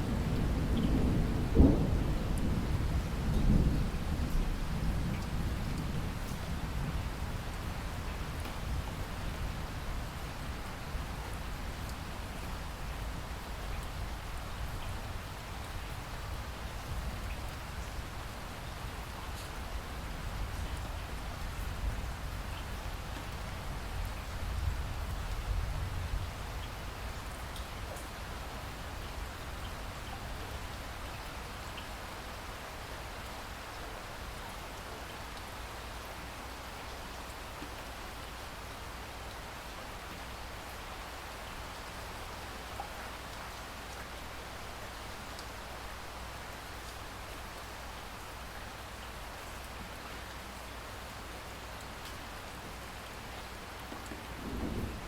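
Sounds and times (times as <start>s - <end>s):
rain drops ticking: 0.0s - 55.0s
steady rain hiss: 0.0s - 55.0s.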